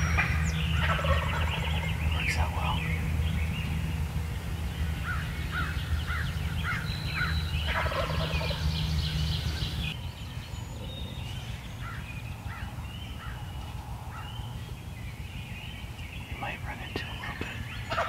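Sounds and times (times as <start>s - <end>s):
turkey gobbling: 0.1s - 2.4s, 6.7s - 8.7s
turkey hen yelping: 0.2s - 1.8s, 6.7s - 8.6s.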